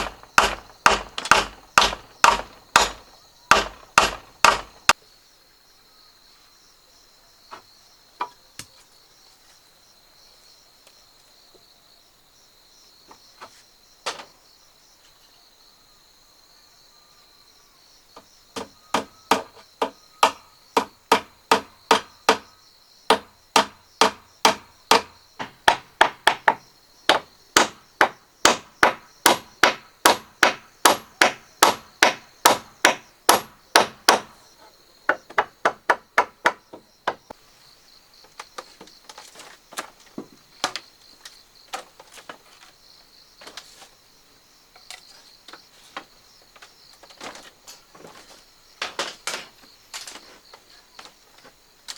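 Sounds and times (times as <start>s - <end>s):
hammering on wood: 0.0s - 5.0s, 18.2s - 22.5s, 23.1s - 34.4s, 35.1s - 37.4s, 48.8s - 49.5s.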